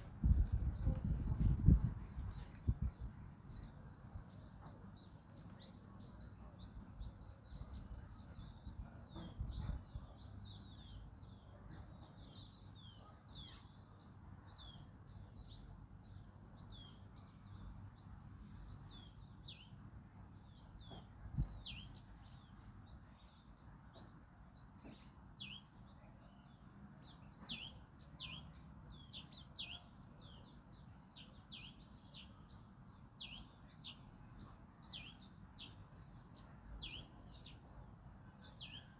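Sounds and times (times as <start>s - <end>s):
low wind rumble: 0.0s - 4.2s
small birds chirping: 0.0s - 38.9s.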